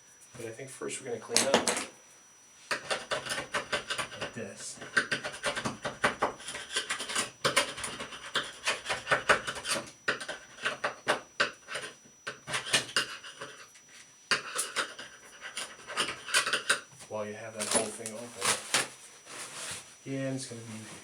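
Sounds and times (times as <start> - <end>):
scrubbing and scraping strokes: 18.4 - 20.0.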